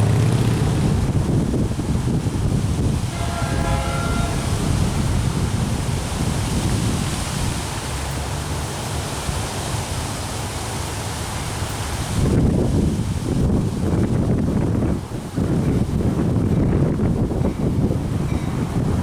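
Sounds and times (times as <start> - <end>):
train wheels rumbling on rails: 0.0 - 19.0
wind buffeting microphone: 0.0 - 19.0.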